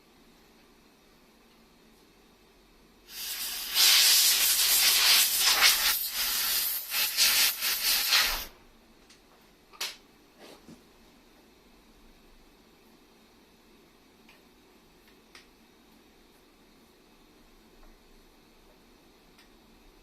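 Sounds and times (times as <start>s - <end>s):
pressurised spray hissing: 3.1s - 8.5s.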